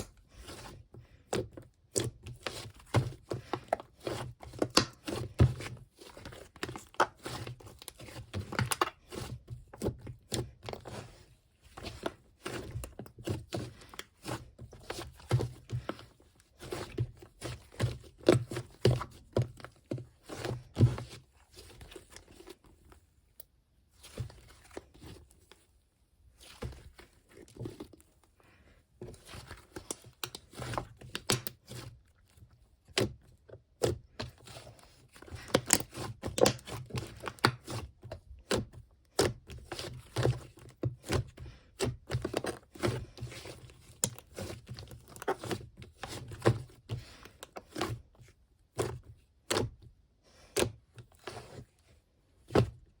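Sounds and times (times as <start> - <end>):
slime squishing and crackling: 29.2 - 48.0.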